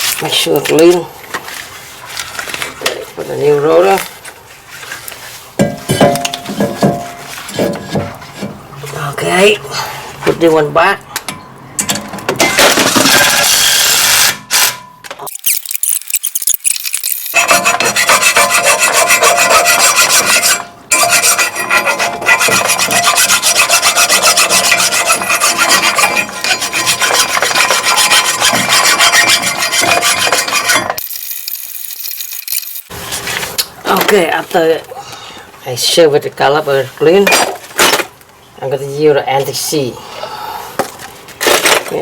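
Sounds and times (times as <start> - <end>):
brake parts scrubbed by hand: 17.4 - 31.0.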